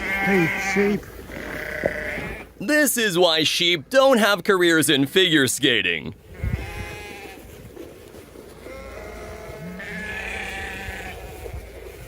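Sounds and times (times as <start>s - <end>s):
sheep bleating: 0.0s - 2.5s, 6.3s - 7.4s, 8.6s - 11.8s.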